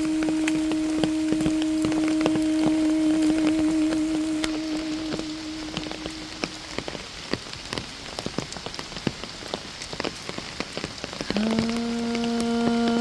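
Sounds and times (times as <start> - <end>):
held note of hymn singing: 0.0 - 7.1, 11.3 - 13.0
steady rain drops tapping: 0.0 - 13.0.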